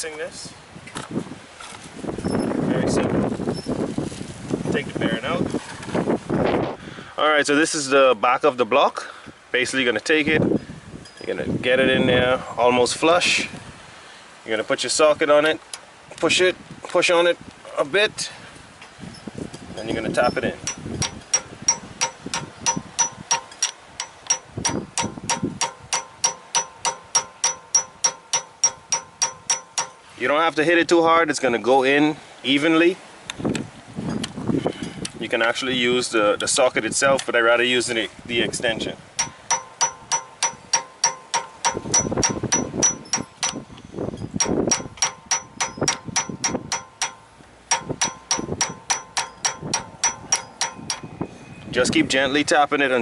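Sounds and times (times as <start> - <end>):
hammer tapping on metal socket: 20.6 - 30.0, 39.2 - 43.7, 44.4 - 51.1.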